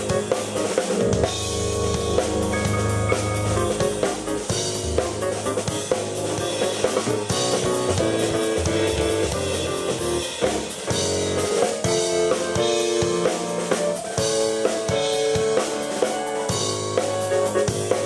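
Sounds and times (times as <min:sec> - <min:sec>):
held keyboard chords: 0:00.0 - 0:18.0
steady drum beat: 0:00.0 - 0:18.0
bass line: 0:01.0 - 0:10.6.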